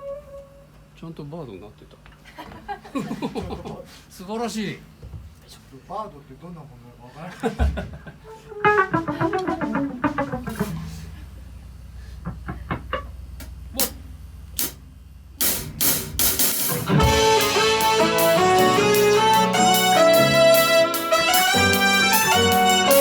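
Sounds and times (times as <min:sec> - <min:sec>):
live band playing: 0:08.3 - 0:11.1, 0:15.6 - 0:23.0
plucked guitar notes: 0:08.3 - 0:11.3, 0:16.7 - 0:23.0
drum hits: 0:08.6 - 0:11.2, 0:15.4 - 0:23.0
cymbal crashes: 0:15.4 - 0:23.0.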